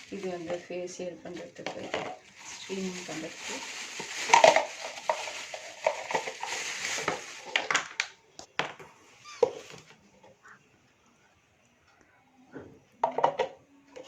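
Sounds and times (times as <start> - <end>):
plastic rustling and crackling: 0.0 - 10.2.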